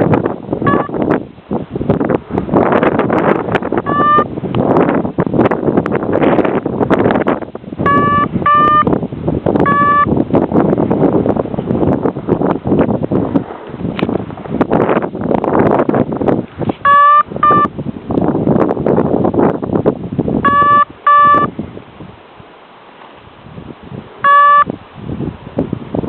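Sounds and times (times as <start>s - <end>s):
gusty wind buffeting microphone: 0.0s - 26.0s
short loud beeps: 0.7s - 1.0s, 3.9s - 4.3s, 7.9s - 8.9s, 9.6s - 10.1s, 16.8s - 17.7s, 20.4s - 21.5s, 24.2s - 24.7s.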